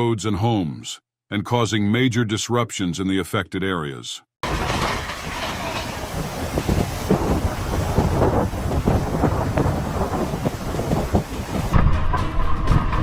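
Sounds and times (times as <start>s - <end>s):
floodwater rushing: 4.4s - 11.8s
crackles and knocks: 4.4s - 11.9s.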